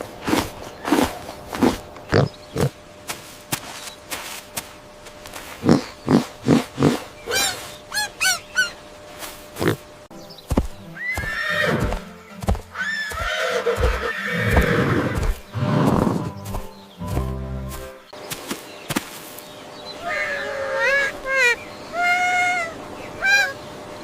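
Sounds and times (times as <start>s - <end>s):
horse whinnying: 11.0s - 12.0s, 12.8s - 16.3s.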